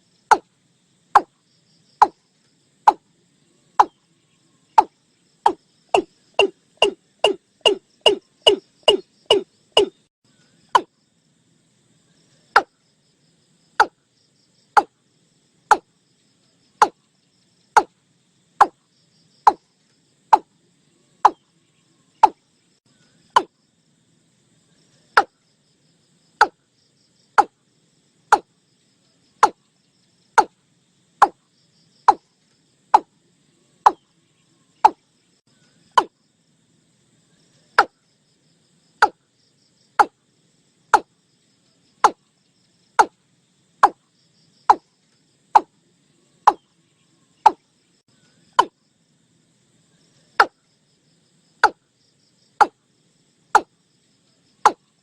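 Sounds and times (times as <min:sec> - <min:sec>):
watercock calling: 0:05.5 - 0:10.0.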